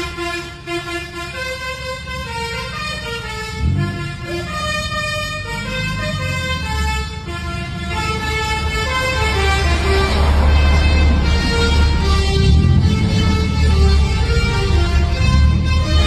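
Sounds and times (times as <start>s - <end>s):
musical bus horn melody: 0.0s - 16.0s
low engine rumble: 3.6s - 16.0s.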